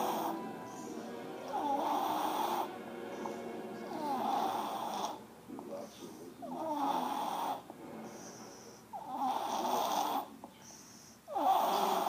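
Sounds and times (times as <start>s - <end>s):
quiet breaths: 0.0s - 12.0s
person snoring: 6.4s - 10.3s, 11.3s - 12.0s.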